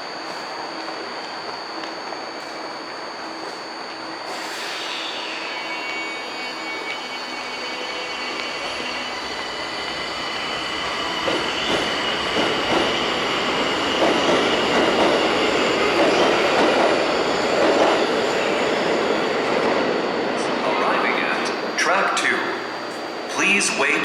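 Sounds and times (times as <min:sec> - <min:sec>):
train wheels squealing: 0:00.0 - 0:24.0
train rumble and clatter: 0:05.7 - 0:24.0.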